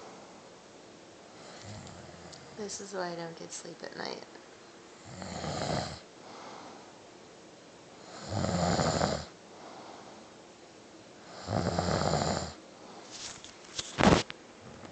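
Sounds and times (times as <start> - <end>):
person snoring: 1.4 - 2.6, 5.0 - 6.0, 8.0 - 9.3, 11.3 - 12.6.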